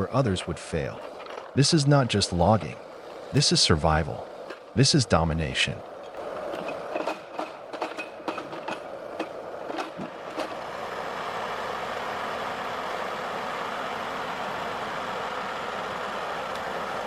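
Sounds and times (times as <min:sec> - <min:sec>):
forestry machine running drone: 0:00.0 - 0:17.0.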